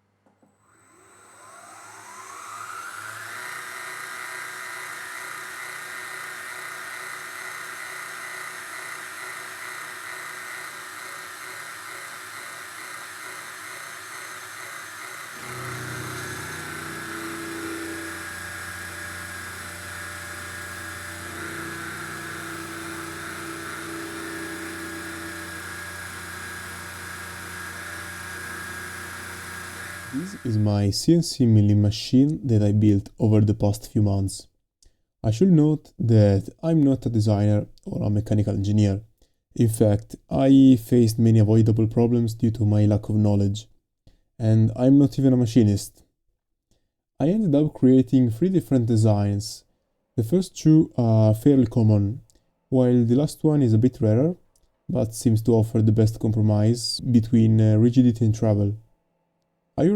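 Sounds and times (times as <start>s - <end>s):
milling machine spindle whine: 0.6s - 30.7s.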